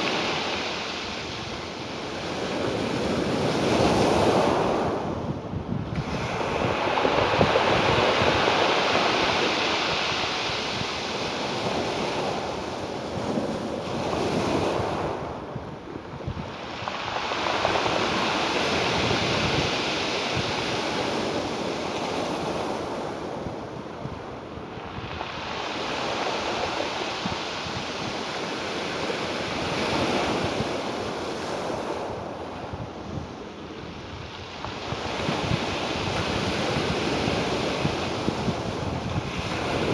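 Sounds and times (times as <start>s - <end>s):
ocean waves washing in: 0.0s - 39.9s.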